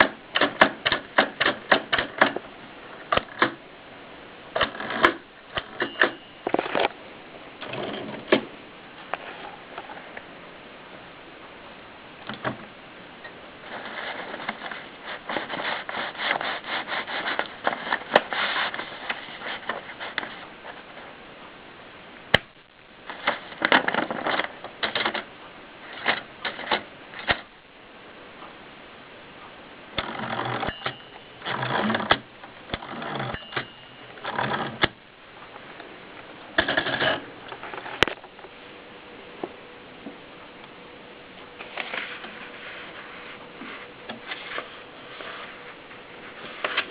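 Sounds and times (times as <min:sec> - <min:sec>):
typewriter key strikes: 0:00.0 - 0:02.4.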